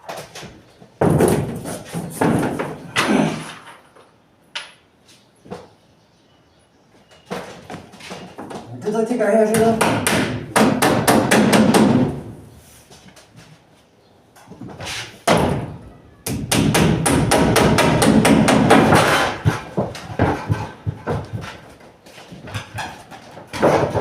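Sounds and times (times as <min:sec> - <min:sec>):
hammer driving nails into wood: 0:09.6 - 0:12.3, 0:16.3 - 0:20.7.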